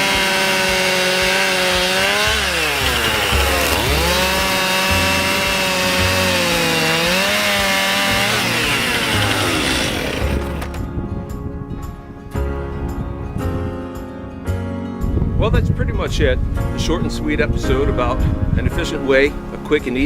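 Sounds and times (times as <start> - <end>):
chainsaw engine running: 0.0 - 10.8.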